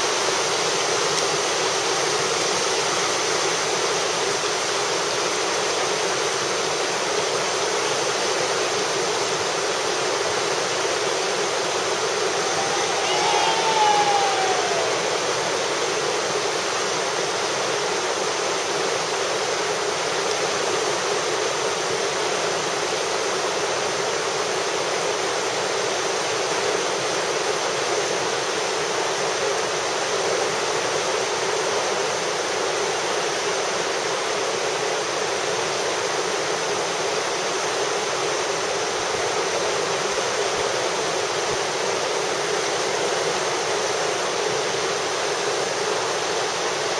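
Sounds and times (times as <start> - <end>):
whitewater rushing: 12.1 - 16.6.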